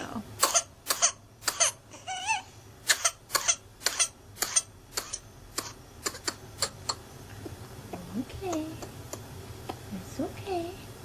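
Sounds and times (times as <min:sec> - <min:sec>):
child coughing sharply: 0:00.4 - 0:00.7.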